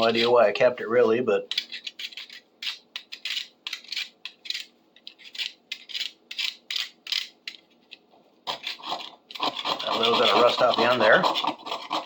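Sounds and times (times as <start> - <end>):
scrubbing rusty iron: 8.5 - 12.0.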